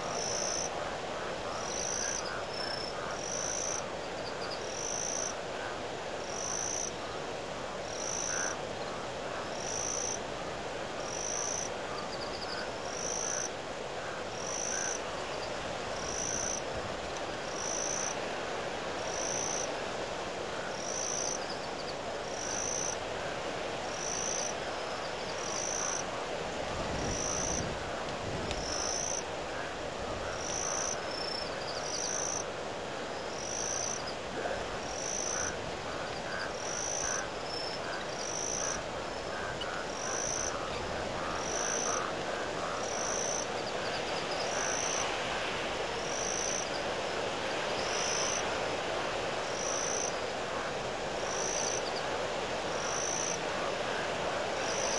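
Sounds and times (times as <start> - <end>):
wind buffeting microphone: 26.6 - 28.8.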